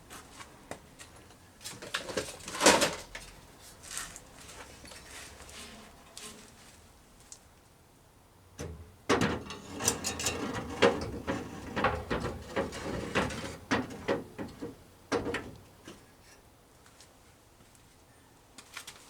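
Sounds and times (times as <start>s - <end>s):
metallic knocks and clunks: 8.6s - 16.0s.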